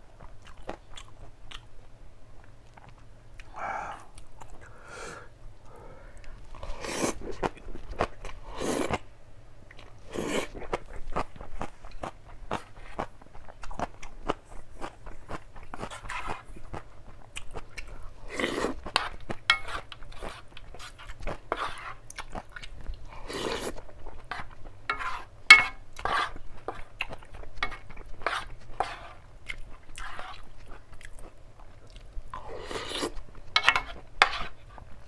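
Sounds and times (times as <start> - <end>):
chewing and mouth clicks: 22.1 - 24.5, 29.4 - 32.2.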